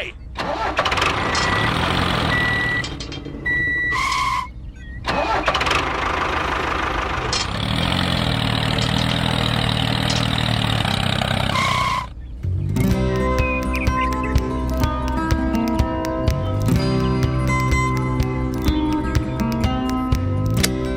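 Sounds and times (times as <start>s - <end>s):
small engine running: 0.4s - 4.5s, 5.1s - 12.1s
short high beeps: 1.5s - 5.0s
two-tone beep: 1.5s - 5.0s.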